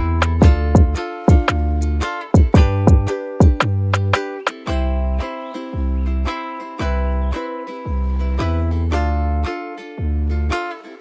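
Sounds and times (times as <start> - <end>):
sharp percussive hits: 0.0 - 4.8
plucked strings over bass: 0.0 - 11.0.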